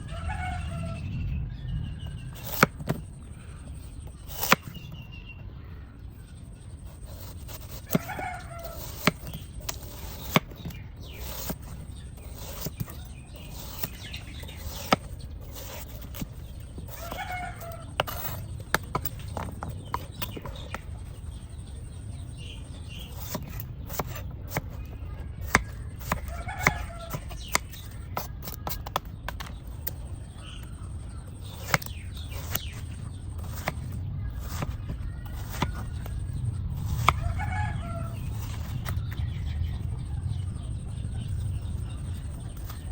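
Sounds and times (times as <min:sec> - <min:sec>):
steady low hum: 0:00.0 - 0:42.9
knife cutting watermelon: 0:02.2 - 0:05.3, 0:06.7 - 0:40.0, 0:40.7 - 0:42.9
chickens clucking: 0:16.8 - 0:21.2, 0:23.2 - 0:42.9.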